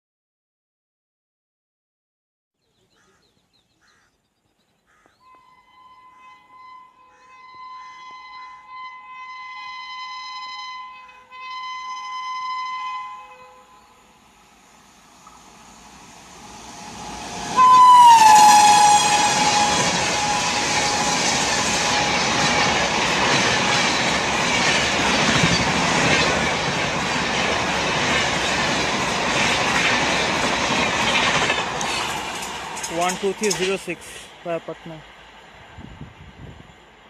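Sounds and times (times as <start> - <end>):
locomotive horn blast: 5.2 - 14.0, 17.4 - 23.0
train rushing past: 5.3 - 37.0
train wheel clatter: 17.0 - 34.2.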